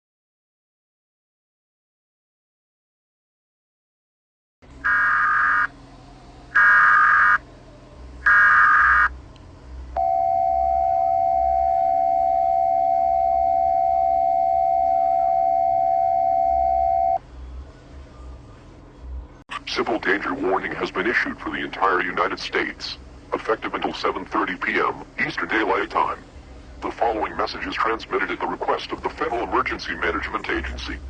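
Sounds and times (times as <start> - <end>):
steady alert tone: 10.0 - 17.2.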